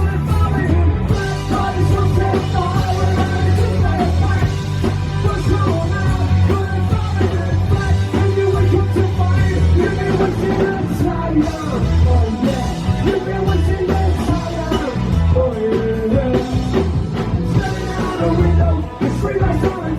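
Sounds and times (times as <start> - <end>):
person singing: 0.0 - 17.0, 17.6 - 19.9
live punk rock band: 0.0 - 19.9.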